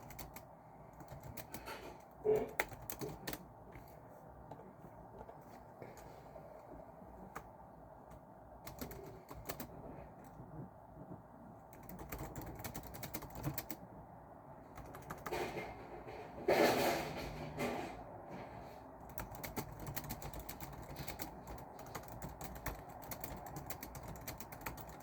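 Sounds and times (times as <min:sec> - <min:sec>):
typing on computer keyboard: 0:00.0 - 0:03.9, 0:08.1 - 0:10.4, 0:11.7 - 0:13.8, 0:14.7 - 0:15.5, 0:19.0 - 0:25.0.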